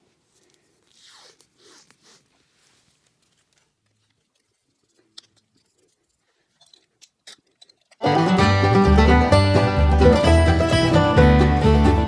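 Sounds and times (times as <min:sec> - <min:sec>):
faint rustles: 0:00.0 - 0:06.9.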